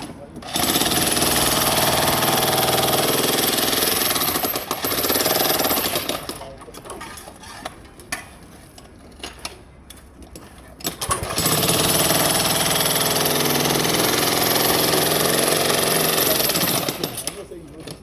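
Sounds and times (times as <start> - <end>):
jackhammer breaking concrete: 0.0 - 6.6, 10.8 - 17.5.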